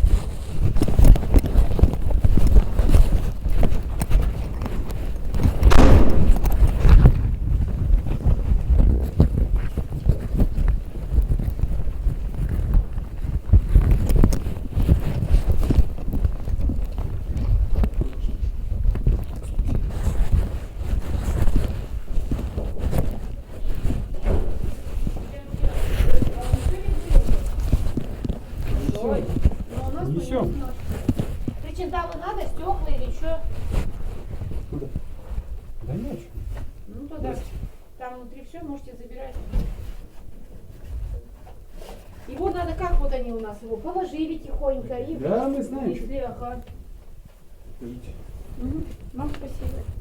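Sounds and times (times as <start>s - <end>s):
wind buffeting microphone: 3.3s - 24.0s
low rumble on microphone: 5.6s - 10.2s
footsteps walking: 5.7s - 7.2s.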